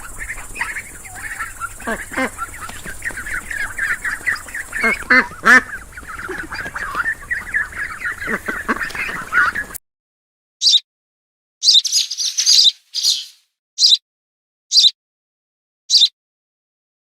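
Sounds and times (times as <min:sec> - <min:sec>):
flock of fowl calling: 0:00.0 - 0:09.8.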